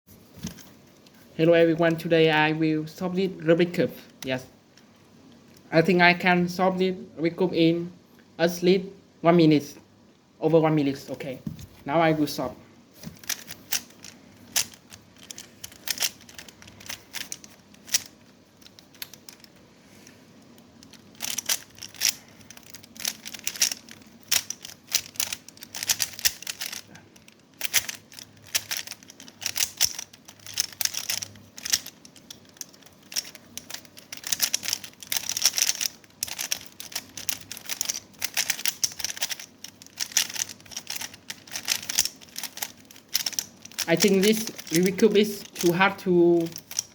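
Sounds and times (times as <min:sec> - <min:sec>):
puzzle cube clicking and rattling: 0:13.0 - 0:46.9.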